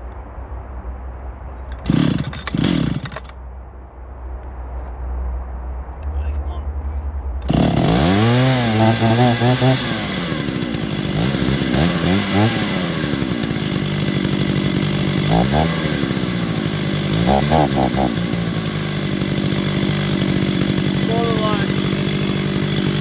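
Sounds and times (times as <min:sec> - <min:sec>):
chainsaw engine revving and idling: 0:01.7 - 0:03.4, 0:07.4 - 0:23.0.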